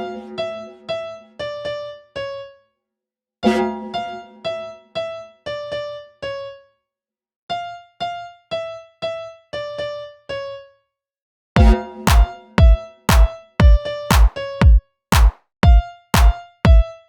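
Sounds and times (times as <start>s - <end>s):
heavy electronic drum beat: 11.6s - 16.8s.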